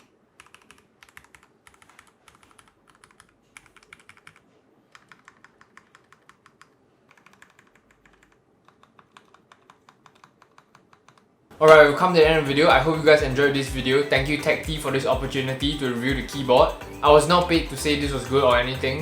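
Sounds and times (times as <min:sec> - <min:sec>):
mechanical keyboard typing: 0:00.0 - 0:11.3.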